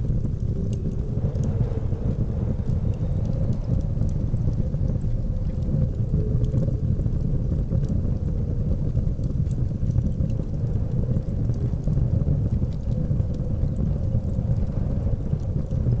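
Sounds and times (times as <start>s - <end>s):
blizzard wind rumbling: 0.0s - 16.0s
faint wood fire crackling: 0.0s - 16.0s.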